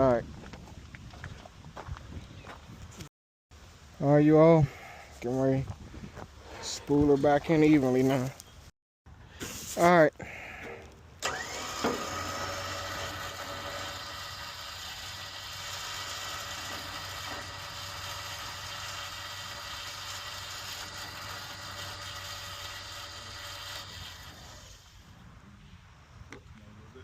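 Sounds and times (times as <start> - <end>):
winch motor whining: 10.8 - 24.9.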